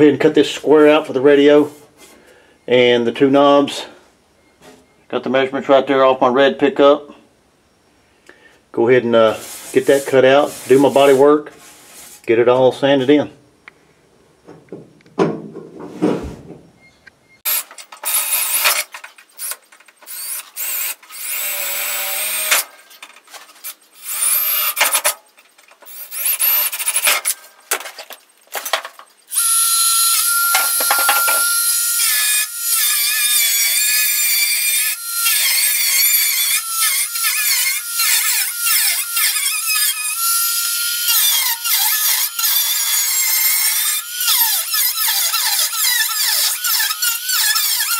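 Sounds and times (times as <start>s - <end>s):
power tool cutting steel: 17.5s - 22.7s, 23.6s - 25.2s, 25.8s - 27.4s, 29.3s - 47.9s.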